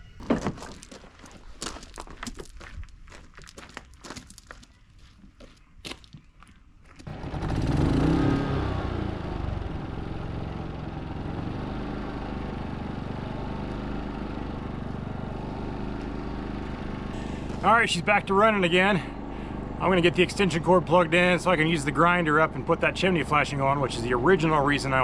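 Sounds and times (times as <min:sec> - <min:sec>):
generator engine running: 0:07.1 - 0:25.0.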